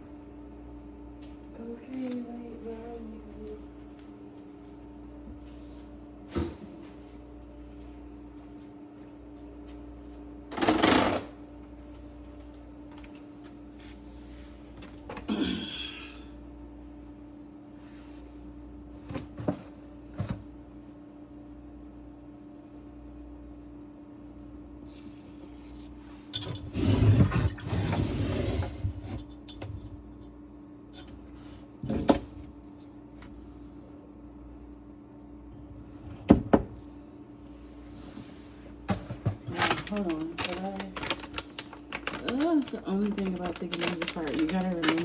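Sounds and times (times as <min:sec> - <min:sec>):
steady low hum: 0:11.3 - 0:45.0.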